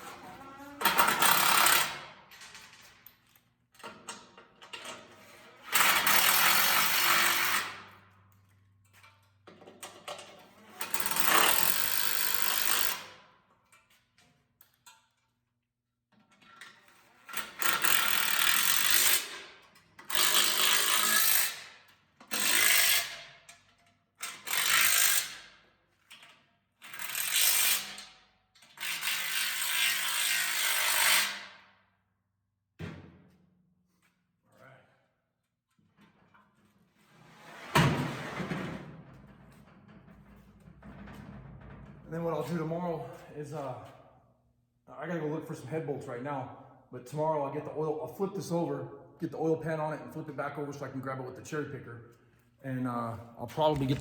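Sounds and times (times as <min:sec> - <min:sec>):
power tool driving bolts: 0:00.8 - 0:02.1, 0:05.7 - 0:07.8, 0:10.8 - 0:13.1, 0:17.3 - 0:21.7.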